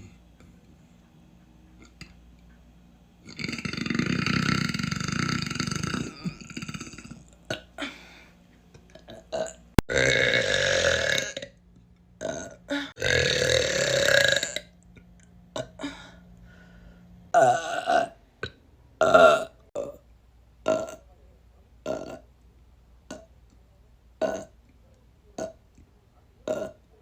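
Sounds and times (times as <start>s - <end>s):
person burping: 3.2s - 8.2s, 8.9s - 11.6s, 12.2s - 14.8s, 15.6s - 16.2s, 17.3s - 20.0s, 20.6s - 21.0s, 21.8s - 22.2s, 23.1s - 23.3s, 24.2s - 24.6s, 25.4s - 25.6s, 26.4s - 26.9s.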